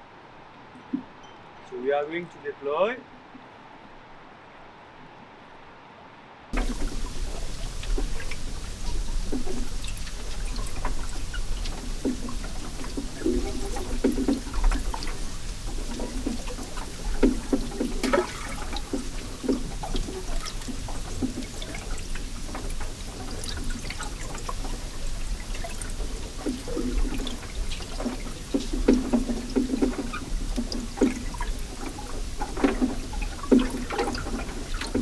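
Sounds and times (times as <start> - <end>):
bubbling gurgles: 6.6 - 35.0
small underwater knocks: 6.6 - 35.0
underwater rush of flowing water: 6.6 - 35.0.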